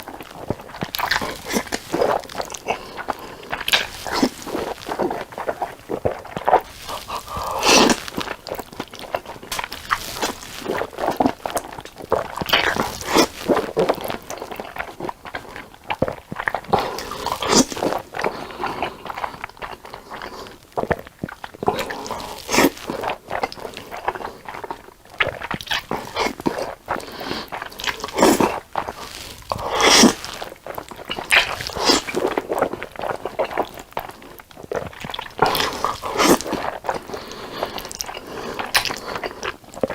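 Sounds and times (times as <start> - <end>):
crunchy bites: 0.0 - 15.1, 15.9 - 18.2, 24.7 - 37.1
slurping noodles: 0.0 - 39.9
wet smacking chewing: 0.0 - 39.9.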